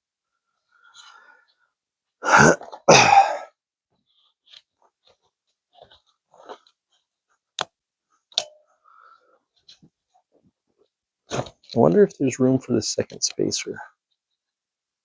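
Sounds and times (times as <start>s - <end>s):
faint scrapes and rustles: 3.9s - 12.1s.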